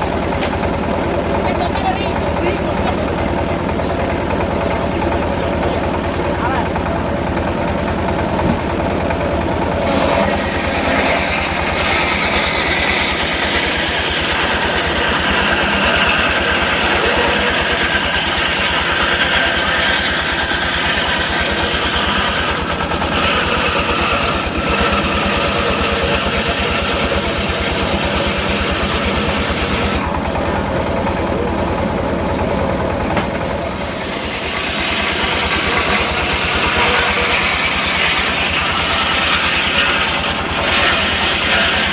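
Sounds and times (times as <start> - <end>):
sawmill engine running: 0.0 - 41.9
saw blade cutting wood: 8.3 - 30.0, 33.2 - 41.9.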